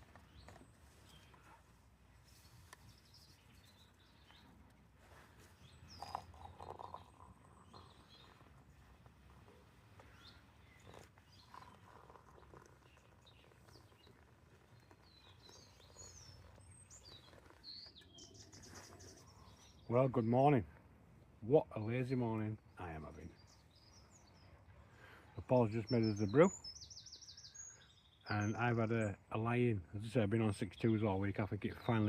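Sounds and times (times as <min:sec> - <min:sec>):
bird chirps and calls: 0:10.0 - 0:20.3, 0:23.1 - 0:29.2.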